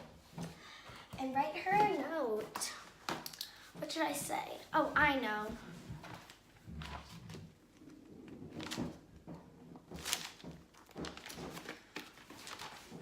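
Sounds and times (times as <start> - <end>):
handling knocks and rustles: 8.3 - 13.0.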